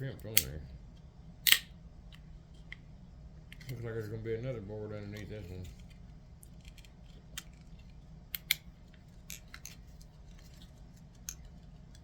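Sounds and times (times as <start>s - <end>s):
steady low hum: 0.0s - 12.0s
sharp plastic snaps: 1.4s - 1.7s, 8.4s - 8.7s.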